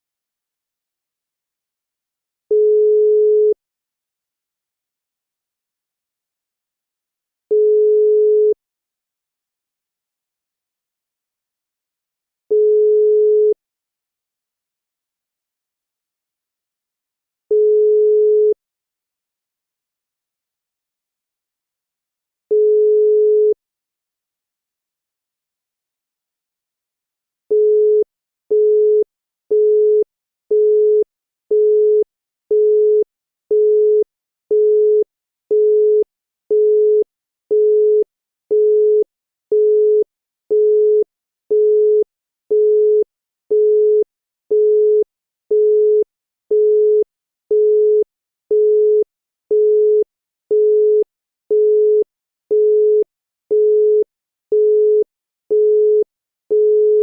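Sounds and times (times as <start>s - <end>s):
telephone busy tone beeping: 2.5s - 3.6s, 7.5s - 8.6s, 12.5s - 13.6s, 17.5s - 18.6s, 22.5s - 23.6s, 27.5s - 57.0s.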